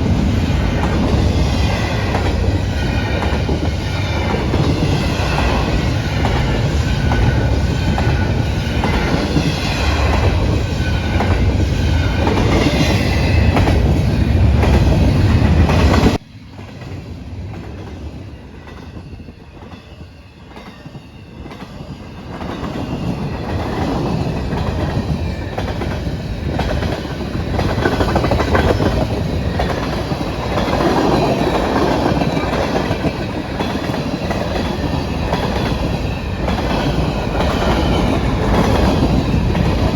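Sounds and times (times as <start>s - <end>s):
train wheels clattering and squealing: 0.0s - 39.9s.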